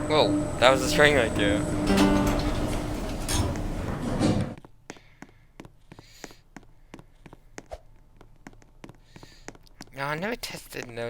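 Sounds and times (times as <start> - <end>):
lift buttons clicking: 1.8 - 3.9
pitched music-like tone: 1.9 - 3.2.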